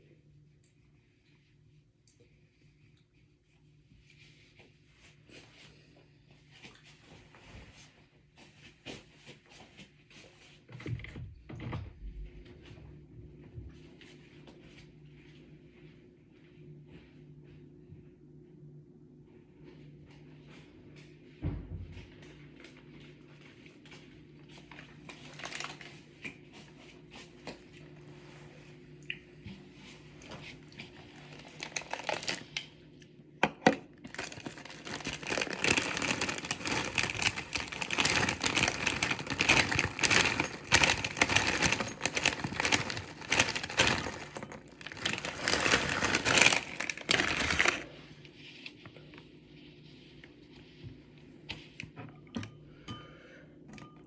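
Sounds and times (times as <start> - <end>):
plastic packaging crinkling: 25.1 - 26.0, 31.1 - 32.6, 34.0 - 48.0.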